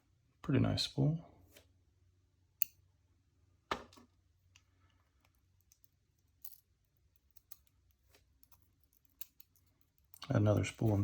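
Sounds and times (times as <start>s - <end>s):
small lock pins clicking: 5.2s - 10.3s.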